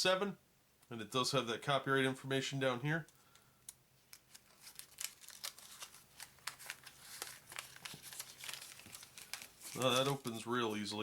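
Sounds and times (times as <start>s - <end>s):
wax-paper wrapper crinkling: 4.1s - 10.8s.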